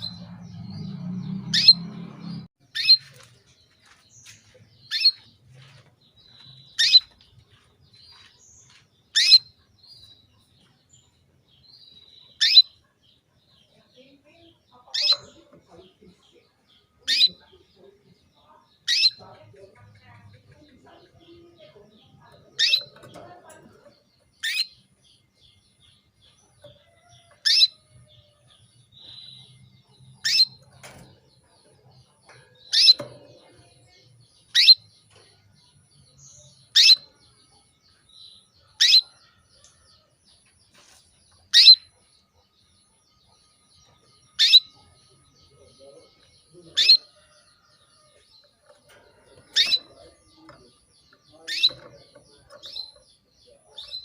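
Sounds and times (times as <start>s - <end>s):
canary calling: 0.0s - 3.2s, 4.8s - 5.4s, 6.2s - 10.1s, 11.8s - 16.2s, 16.8s - 25.0s, 26.7s - 29.5s, 30.2s - 30.7s, 32.5s - 33.3s, 34.4s - 35.0s, 36.3s - 37.2s, 38.7s - 39.4s, 41.5s - 42.1s, 44.3s - 47.4s, 48.4s - 54.0s.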